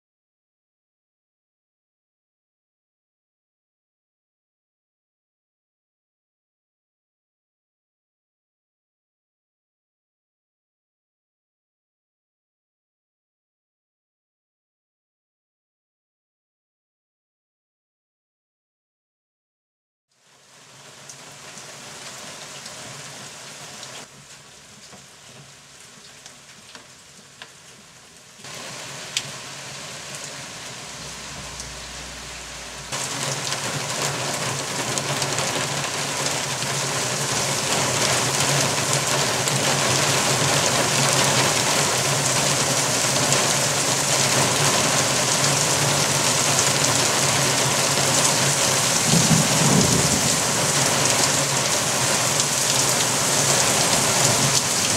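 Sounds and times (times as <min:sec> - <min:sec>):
rain falling steadily: 0:20.1 - 0:54.9.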